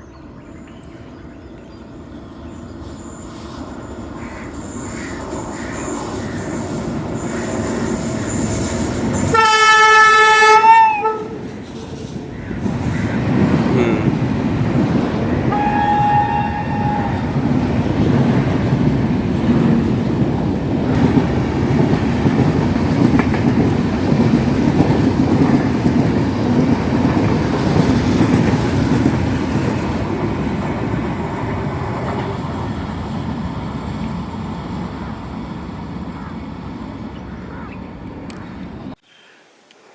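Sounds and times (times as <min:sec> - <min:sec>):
train rumbling and clattering past: 0:00.0 - 0:39.0
train horn: 0:09.2 - 0:11.5, 0:15.4 - 0:17.6.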